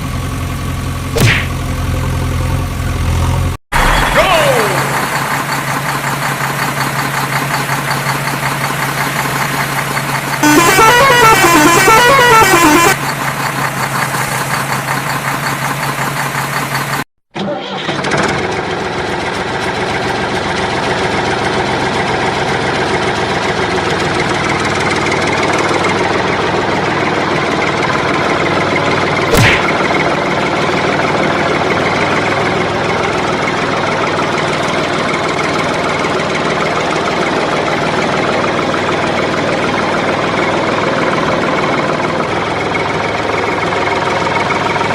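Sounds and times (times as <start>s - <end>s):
vehicle engine running: 0.0s - 17.1s, 18.0s - 44.9s
loud warbling horn: 10.4s - 13.0s.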